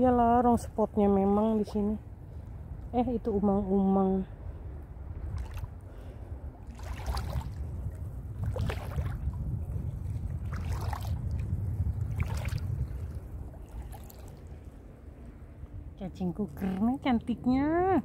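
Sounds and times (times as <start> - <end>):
wind rumbling on microphone: 0.0 - 18.0
shallow seawater splashes: 6.6 - 14.8.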